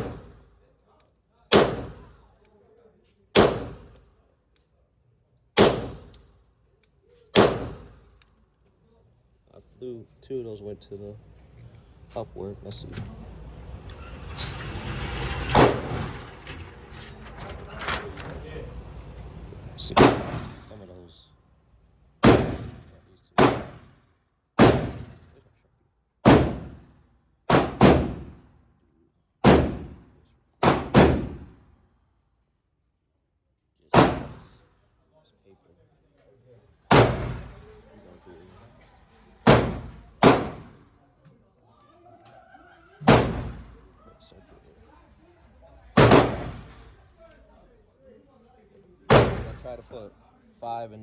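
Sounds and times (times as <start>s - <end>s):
pistol shots with echo: 1.5s - 2.2s, 3.4s - 4.0s, 5.6s - 6.1s, 7.4s - 8.0s, 19.9s - 20.6s, 22.2s - 23.9s, 24.6s - 25.2s, 26.2s - 26.8s, 27.5s - 28.3s, 29.4s - 30.0s, 30.6s - 31.4s, 34.0s - 34.5s, 36.9s - 37.5s, 39.5s - 40.8s, 46.0s - 46.7s, 49.1s - 49.6s.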